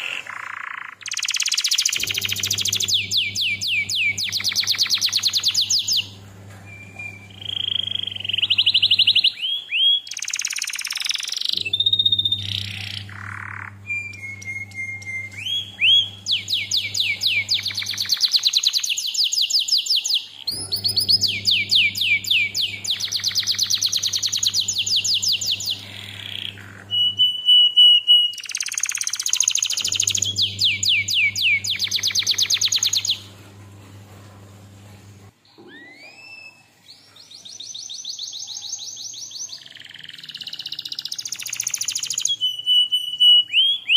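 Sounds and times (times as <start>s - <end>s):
canary singing: 0.0s - 33.6s, 35.6s - 43.9s
steady low hum: 11.5s - 18.1s, 20.5s - 27.2s, 29.7s - 35.4s.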